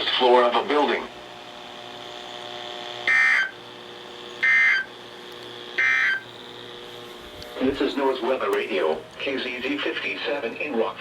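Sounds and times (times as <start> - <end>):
high data tone bursts: 3.0 - 3.6, 4.4 - 4.9, 5.8 - 6.3.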